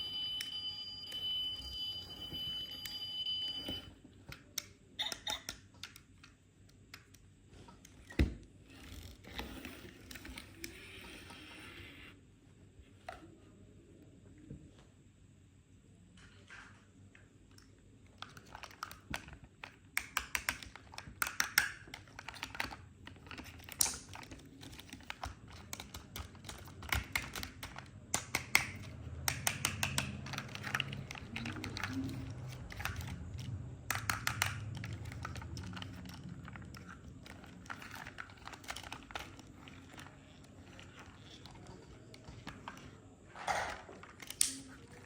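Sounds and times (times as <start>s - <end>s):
plastic packaging clicks and crackles: 17.5s - 43.0s
packaging rustling: 34.4s - 42.8s.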